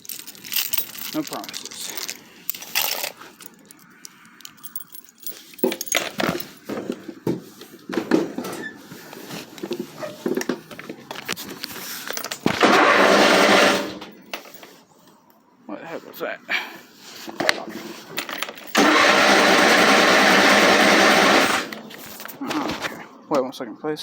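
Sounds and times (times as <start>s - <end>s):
keys jingling: 0.0s - 6.9s, 11.6s - 12.5s, 18.1s - 18.8s, 21.8s - 22.5s
mower engine failing to start: 12.5s - 14.1s, 18.7s - 21.9s.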